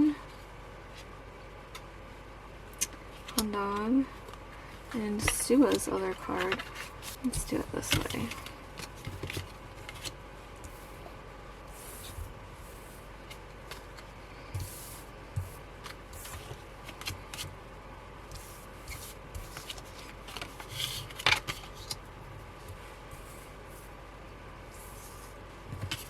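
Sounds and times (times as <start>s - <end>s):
cards rustling and tapping: 3.2s - 11.0s, 11.9s - 17.6s, 18.3s - 22.0s, 25.7s - 26.0s.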